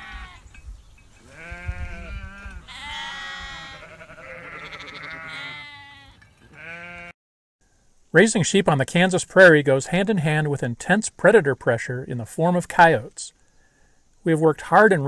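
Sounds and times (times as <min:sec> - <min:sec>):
sheep bleating: 0:00.0 - 0:00.5, 0:01.3 - 0:07.2.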